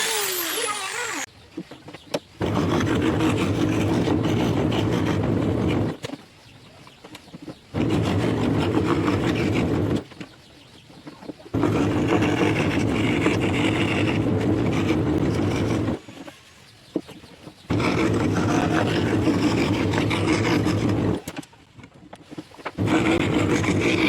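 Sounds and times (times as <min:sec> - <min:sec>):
electric scroll saw cutting wood: 0:00.0 - 0:01.3, 0:17.7 - 0:21.2, 0:22.8 - 0:24.0.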